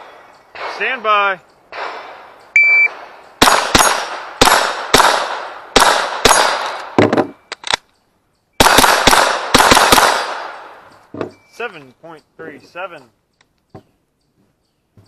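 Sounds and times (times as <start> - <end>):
rifle shots with echo: 1.7 - 2.3, 2.9 - 7.0, 8.6 - 10.9.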